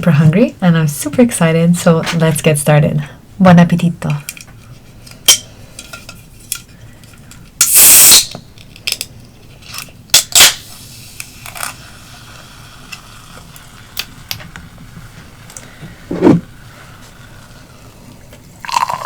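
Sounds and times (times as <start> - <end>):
can opening with fizzing hiss: 7.3 - 9.1, 9.7 - 14.6.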